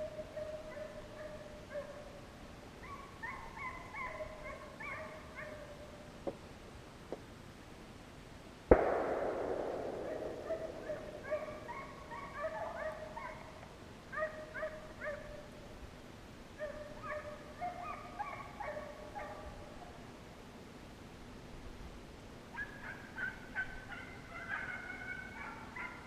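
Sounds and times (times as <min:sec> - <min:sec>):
hounds baying: 0:02.8 - 0:06.0, 0:10.0 - 0:15.5, 0:16.6 - 0:19.9, 0:22.6 - 0:26.0
gunshot echoing: 0:08.7 - 0:12.3.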